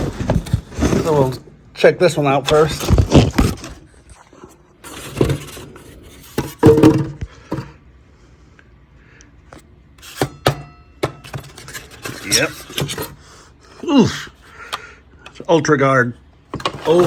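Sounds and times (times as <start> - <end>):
box handling knocks and clatter: 0.0 - 1.4, 6.3 - 7.7.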